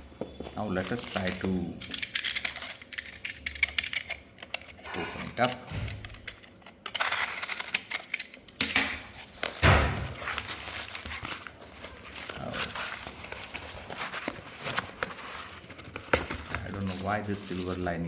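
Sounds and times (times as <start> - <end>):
cardboard rustling and scraping: 9.1 - 18.0.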